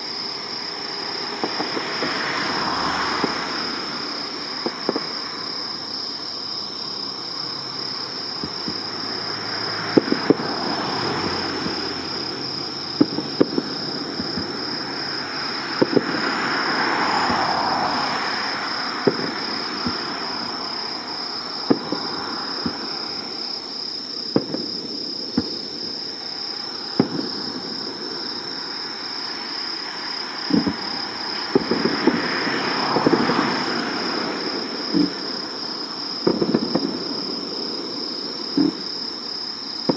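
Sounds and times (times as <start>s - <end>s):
fireworks bangs: 0.0s - 6.2s, 7.0s - 39.9s
hissy crackle of fireworks: 0.0s - 39.9s
high insect chirring: 11.3s - 39.9s.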